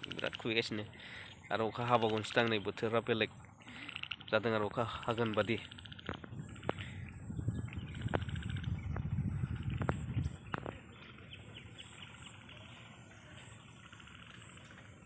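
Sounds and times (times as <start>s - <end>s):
birds chirping: 0.0s - 15.0s
low rumbling noise: 6.0s - 12.1s.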